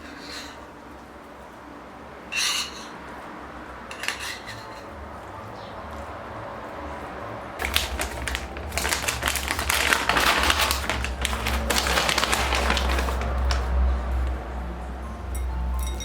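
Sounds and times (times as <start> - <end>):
kitchen clicks and rattling: 3.9 - 4.9.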